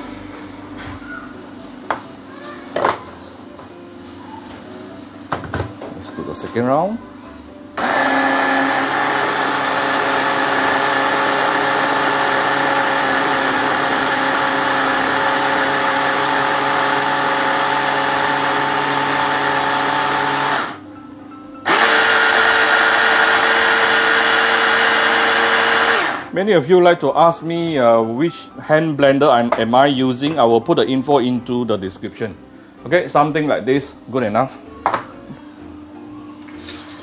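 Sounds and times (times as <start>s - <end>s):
hand blender running: 7.8s - 20.8s, 21.6s - 26.4s.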